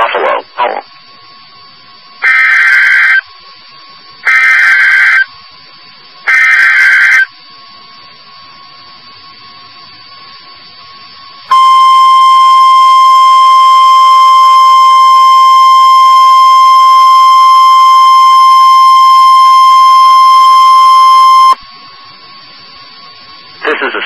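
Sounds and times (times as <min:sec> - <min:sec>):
screeching digital data tones: 0:02.2 - 0:03.3, 0:04.2 - 0:05.3, 0:06.2 - 0:07.4, 0:11.5 - 0:21.6.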